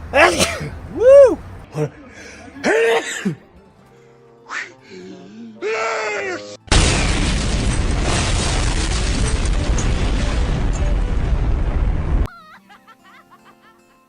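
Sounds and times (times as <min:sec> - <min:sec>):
quiet music: 0:01.7 - 0:07.2
loud explosion with rumble: 0:06.7 - 0:12.3.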